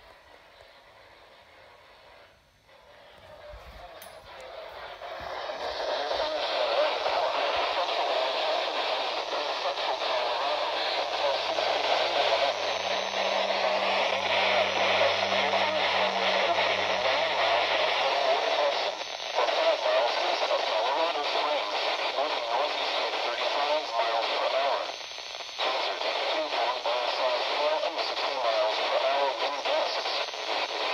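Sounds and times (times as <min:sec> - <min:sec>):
faint low hum: 0:00.0 - 0:24.7
radio static hiss: 0:00.0 - 0:30.9.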